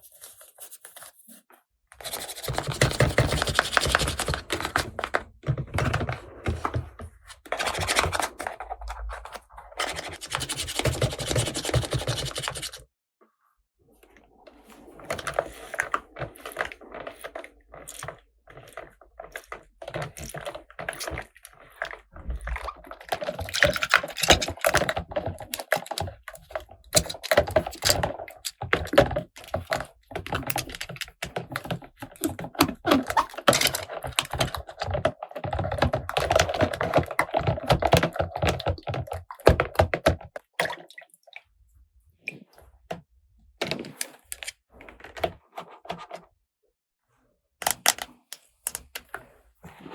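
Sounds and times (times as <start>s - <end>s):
plastic toy pieces clicking: 47.6s - 49.1s.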